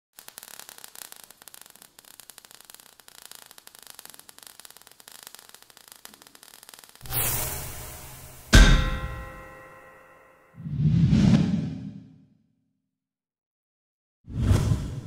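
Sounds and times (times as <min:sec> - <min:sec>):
crackling static: 0:00.1 - 0:08.5.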